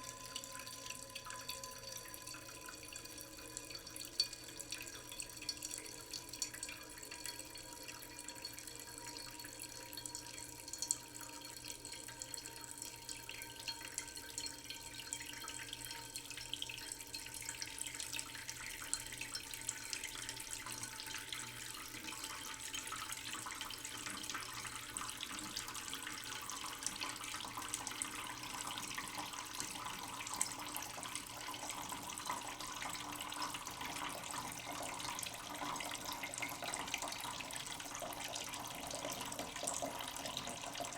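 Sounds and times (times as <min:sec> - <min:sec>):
faint ringing tone: 0:00.0 - 0:02.6
tap water trickling into pot: 0:00.0 - 0:40.9.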